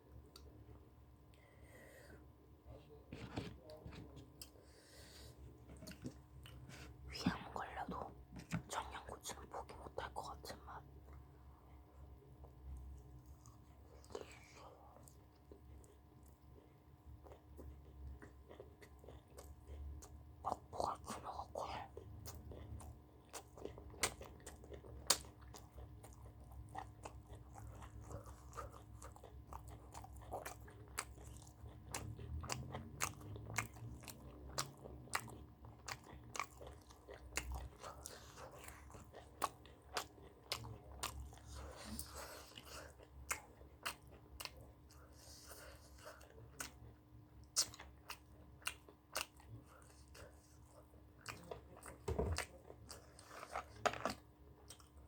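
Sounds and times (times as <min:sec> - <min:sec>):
faint steady hum: 0:00.0 - 0:55.0
wet chewing and crunching: 0:05.7 - 0:06.9, 0:12.4 - 0:55.0.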